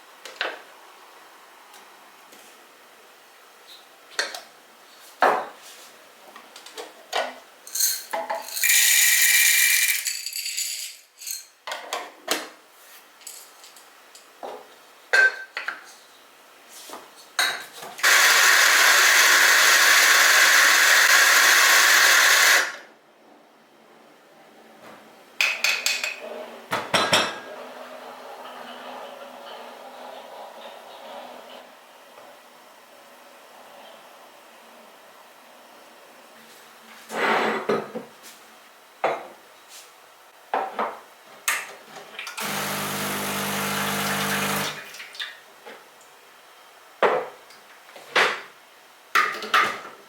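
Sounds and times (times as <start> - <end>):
electric kitchen appliance running: 8.5 - 11.0, 18.0 - 22.9, 42.4 - 44.8.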